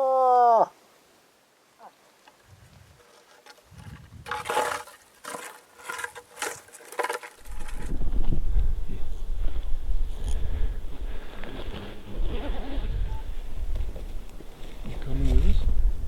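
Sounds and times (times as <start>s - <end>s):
rustling: 1.8s - 8.5s
wind rumble on microphone: 3.7s - 4.3s, 7.4s - 16.0s.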